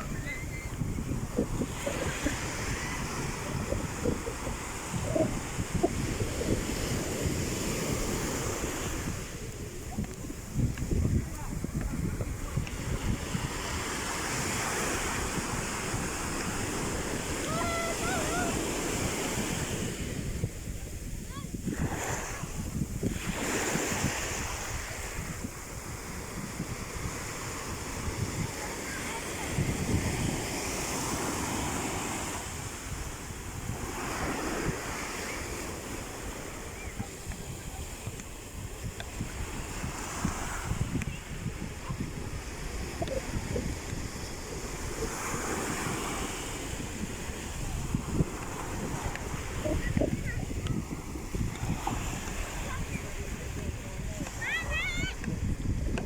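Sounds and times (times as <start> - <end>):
sea waves surging on shore: 0.0 - 56.0
wind buffeting microphone: 0.0 - 56.0.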